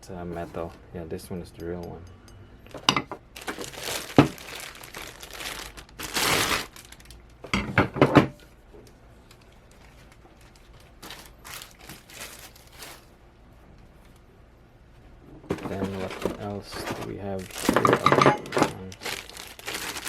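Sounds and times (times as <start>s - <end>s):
plastic wrapping crinkling: 3.3s - 7.4s, 9.2s - 13.2s, 15.5s - 20.0s
metal parts knocking: 17.6s - 18.8s.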